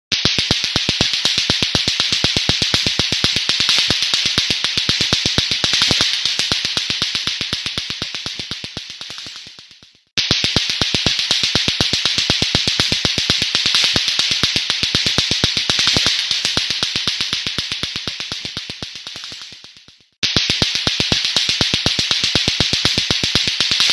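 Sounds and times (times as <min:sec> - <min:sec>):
clacker toy balls clacking: 0:00.1 - 0:23.9.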